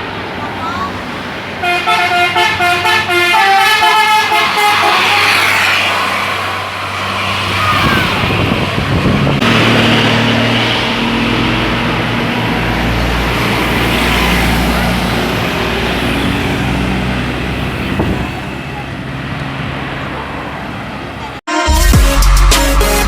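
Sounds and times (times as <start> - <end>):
bus engine and road noise: 0.0 - 21.5
musical bus horn melody: 1.6 - 5.6, 21.5 - 23.0.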